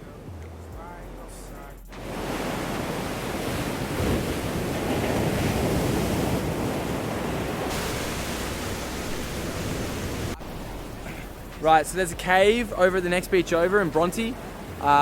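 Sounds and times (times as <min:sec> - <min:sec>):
ocean surf on shore: 0:01.9 - 0:11.9, 0:13.6 - 0:15.0.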